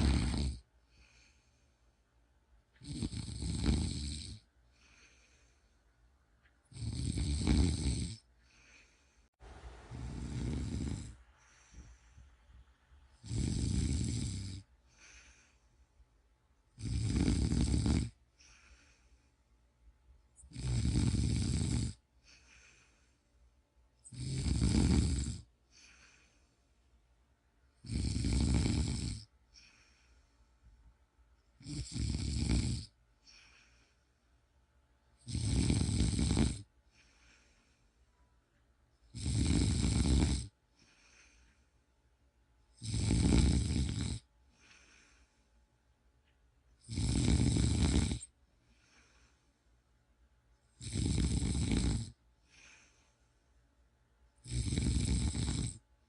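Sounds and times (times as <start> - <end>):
person snoring: 0.0 - 1.5, 2.8 - 5.6, 6.7 - 9.1, 9.8 - 12.0, 13.1 - 15.6, 16.8 - 19.2, 20.4 - 23.2, 24.0 - 26.3, 27.8 - 30.1, 31.6 - 33.8, 35.2 - 37.6, 39.1 - 41.6, 42.7 - 45.3, 46.8 - 49.4, 50.7 - 53.0, 54.4 - 55.8
quiet breathing: 0.0 - 56.0.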